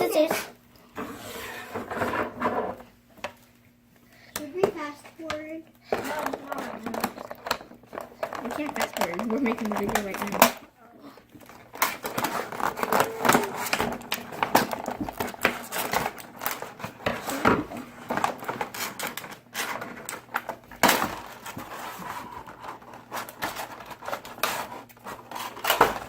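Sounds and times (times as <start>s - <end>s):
packaging being opened: 11.4s - 21.6s.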